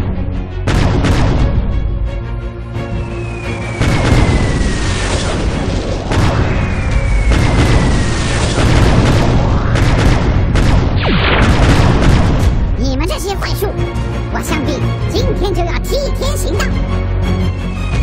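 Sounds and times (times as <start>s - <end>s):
music: 0.0s - 10.7s, 11.4s - 18.0s
explosion booms and hits: 0.0s - 13.1s
falling tones: 2.8s - 9.8s.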